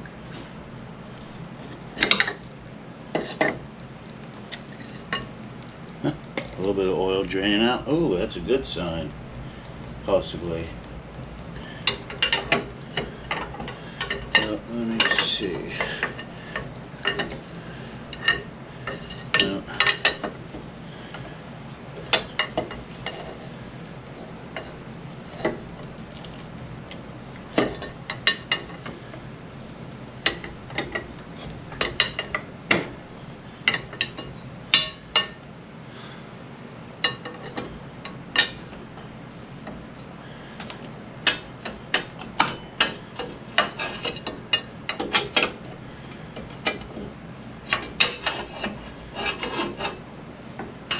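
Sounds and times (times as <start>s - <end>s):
pry bar clinking on metal: 34.8s - 35.4s, 42.2s - 42.8s, 48.0s - 48.4s.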